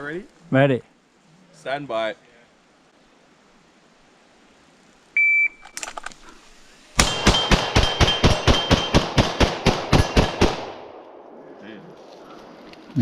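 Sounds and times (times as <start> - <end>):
rapid pistol fire: 7.0 - 10.9.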